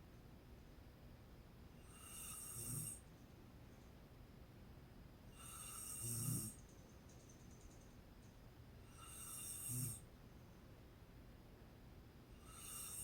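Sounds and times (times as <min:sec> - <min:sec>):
woman snoring: 0:01.9 - 0:03.0, 0:05.4 - 0:06.6, 0:09.0 - 0:10.0, 0:12.4 - 0:13.0.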